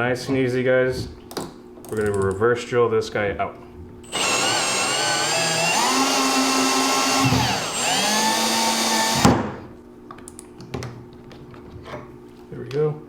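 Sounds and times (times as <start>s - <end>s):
power drill motor running: 4.1s - 9.6s.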